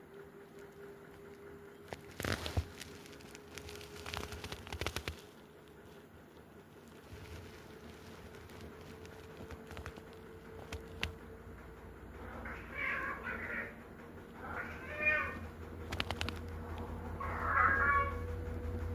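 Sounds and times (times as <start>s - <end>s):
sharp clicks: 7.8s - 11.3s, 15.3s - 17.2s
cat meowing: 12.2s - 13.8s, 14.4s - 15.4s, 17.2s - 18.3s.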